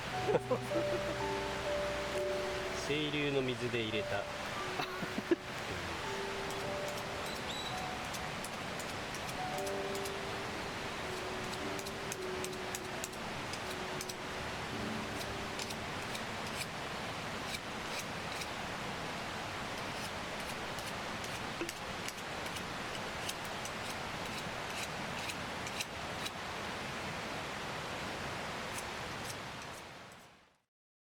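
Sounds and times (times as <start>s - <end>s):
campfire crackling and popping: 5.0s - 18.7s.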